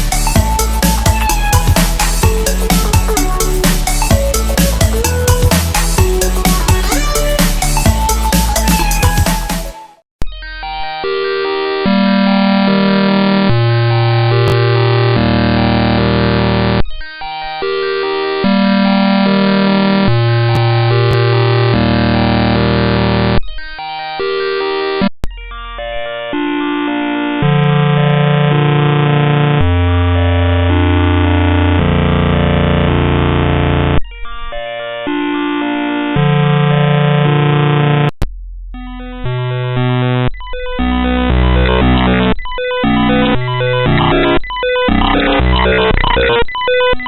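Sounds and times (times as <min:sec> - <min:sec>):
buzzy synthesized tones: 0:00.0 - 0:09.8, 0:27.3 - 0:34.0, 0:38.8 - 0:46.8.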